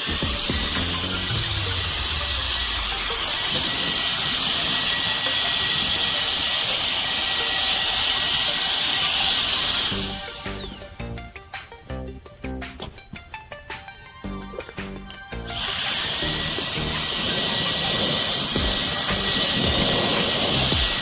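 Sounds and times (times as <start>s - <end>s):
electric air duster blowing: 0.0s - 11.1s, 15.4s - 21.0s.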